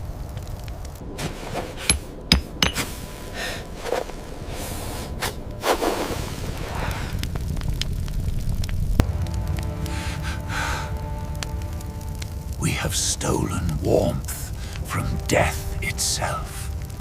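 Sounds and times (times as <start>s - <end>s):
low steady rumble: 7.2s - 17.0s.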